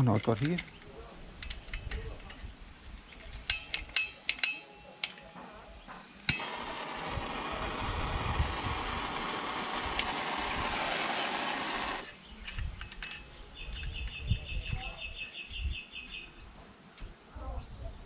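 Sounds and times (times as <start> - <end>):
blowtorch igniting click: 6.2 - 12.1
blowtorch flame hissing: 6.3 - 12.1
light clicks and clinks: 12.1 - 14.1.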